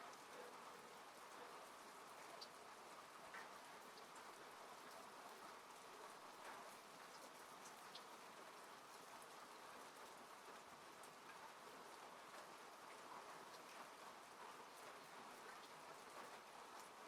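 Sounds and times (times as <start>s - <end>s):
rain on a car: 0.0s - 17.0s
raindrop ticks: 2.2s - 8.2s, 12.3s - 17.0s.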